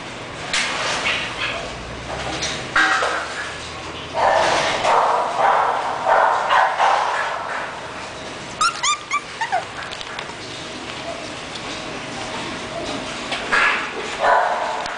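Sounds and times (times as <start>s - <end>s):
puppy barking: 4.2s - 7.7s, 8.6s - 9.8s, 13.5s - 14.9s
puppy whimpering: 8.6s - 10.1s.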